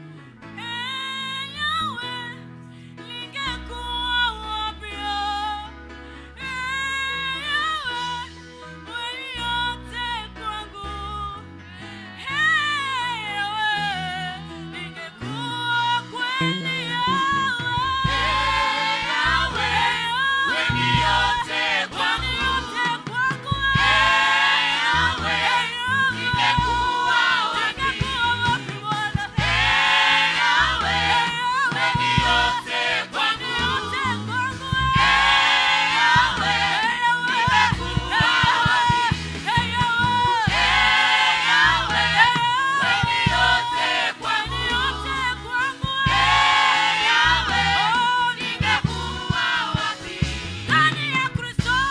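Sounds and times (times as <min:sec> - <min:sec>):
gospel choir singing: 0:11.7 - 0:51.9
instrumental backing with beat: 0:16.4 - 0:51.9.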